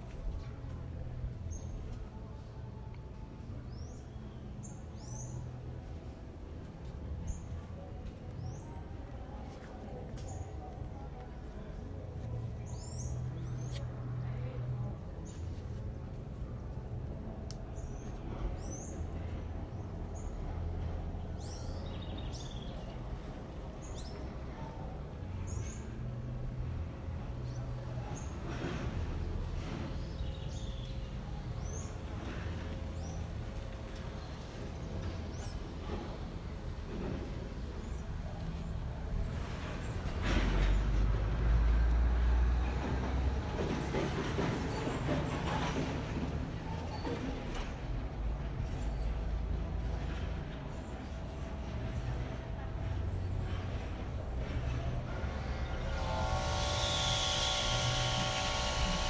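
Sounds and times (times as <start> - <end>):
low city rumble: 0.0 - 59.0
street background noise: 0.0 - 59.0
motor vehicle passing: 55.1 - 59.0.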